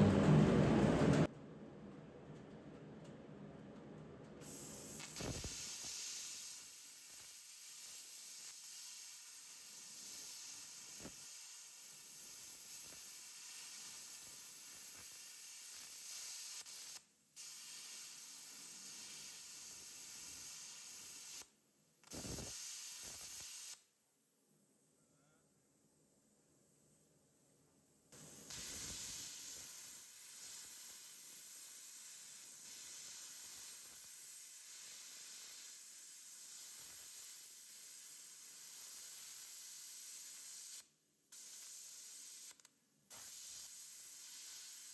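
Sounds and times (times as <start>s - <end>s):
plasma cutter hissing: 4.4s - 23.8s, 28.2s - 40.8s, 41.4s - 44.9s.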